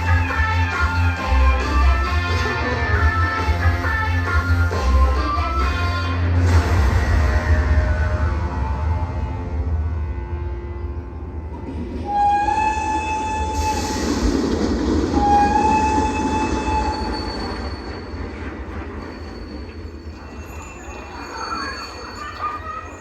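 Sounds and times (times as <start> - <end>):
low rumble: 6.2 - 20.7
train whistle: 12.0 - 14.3, 15.1 - 18.1.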